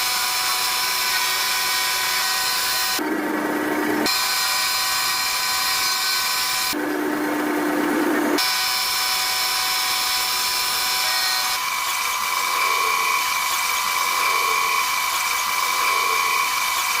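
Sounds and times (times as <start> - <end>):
power tool high whine: 0.0 - 7.5, 8.2 - 17.0.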